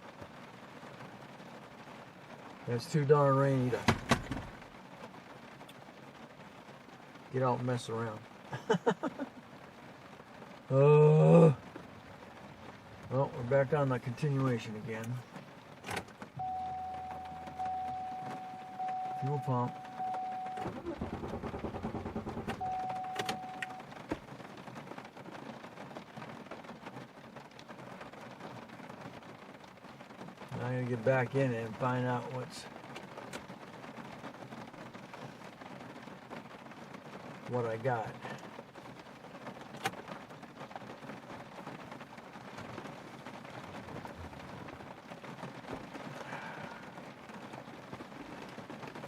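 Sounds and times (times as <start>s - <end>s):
steady rain falling: 0.0s - 49.0s
electronic beep: 16.4s - 21.0s, 22.6s - 23.9s.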